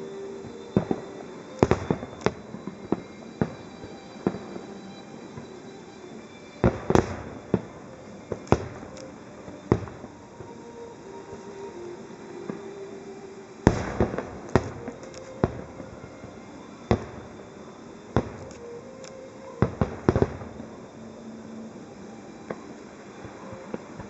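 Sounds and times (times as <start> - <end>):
firework shells bursting: 13.6 - 20.7.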